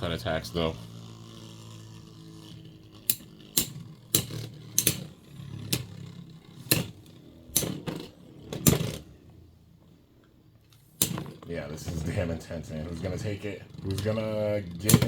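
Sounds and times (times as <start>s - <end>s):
spinning tops whirring: 0.2s - 15.0s.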